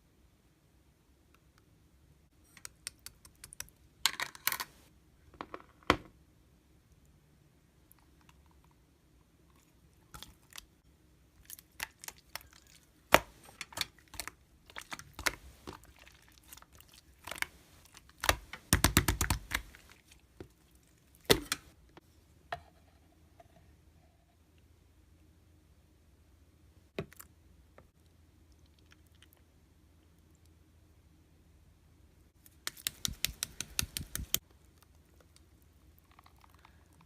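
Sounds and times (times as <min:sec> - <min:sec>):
keyboard typing: 0:32.7 - 0:34.4.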